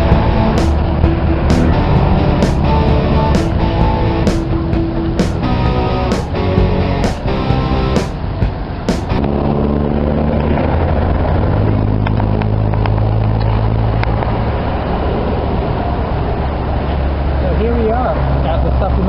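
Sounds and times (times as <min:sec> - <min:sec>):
motorbike engine droning: 0:00.0 - 0:09.2
rush of noise: 0:00.0 - 0:17.5.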